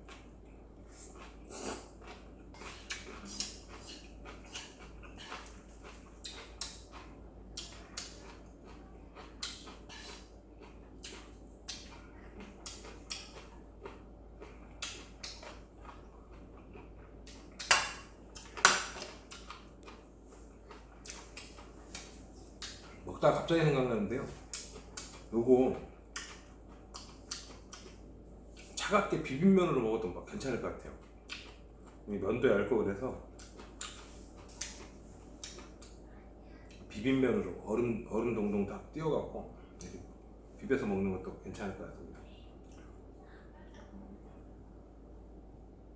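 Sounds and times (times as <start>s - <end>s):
chewing noises: 0.0s - 29.4s, 30.6s - 32.2s, 32.9s - 37.0s.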